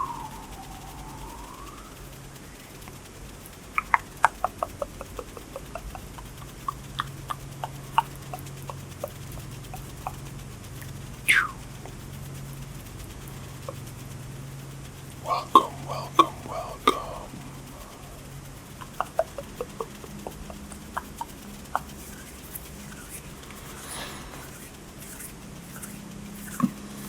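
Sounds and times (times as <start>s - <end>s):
pitch-gliding sweep: 0.0s - 3.0s
steady low hum: 0.0s - 27.0s.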